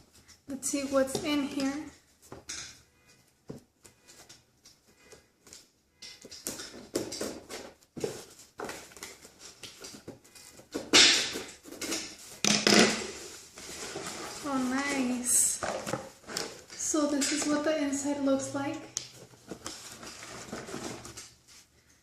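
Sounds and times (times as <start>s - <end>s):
cardboard packaging rustling and scraping: 6.6s - 18.0s, 19.2s - 22.0s.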